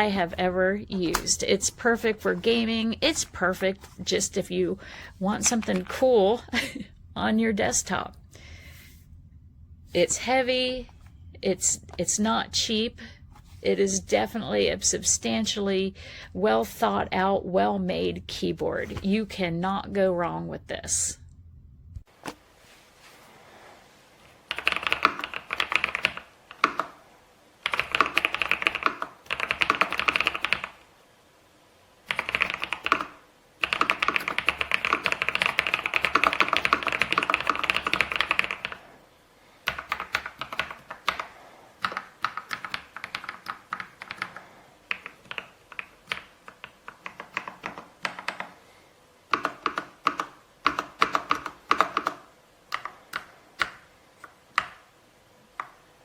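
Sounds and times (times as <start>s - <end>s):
typing on mechanical keyboard: 24.5s - 27.0s, 27.6s - 30.8s, 32.1s - 38.8s, 39.6s - 48.6s, 49.3s - 53.8s.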